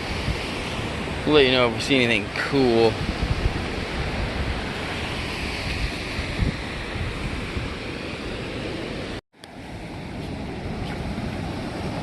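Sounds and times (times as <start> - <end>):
ocean surf washing in: 0.0 - 12.0
wind buffeting microphone: 0.0 - 12.0.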